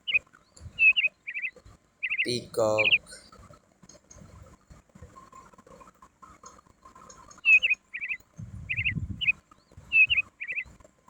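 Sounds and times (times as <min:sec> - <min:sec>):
bird chirping: 0:00.0 - 0:03.2, 0:07.4 - 0:10.7.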